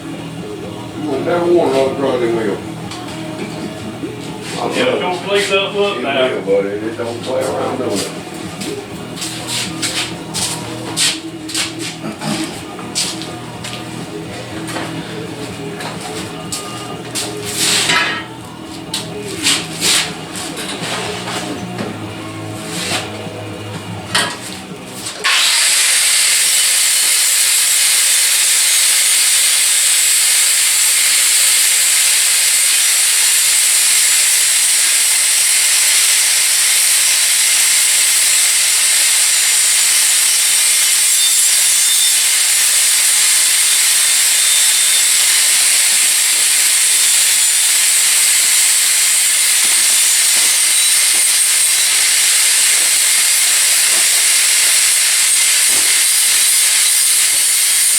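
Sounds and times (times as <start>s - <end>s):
music: 0.0s - 57.9s
loud steady hiss: 25.2s - 57.9s.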